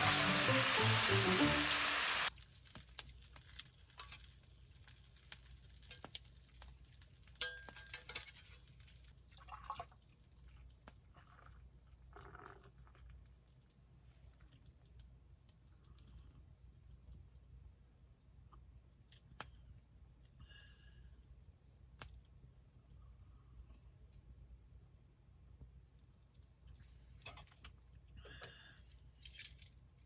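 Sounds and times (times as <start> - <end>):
background music: 0.0 - 2.3
dense sizzle: 0.0 - 7.3.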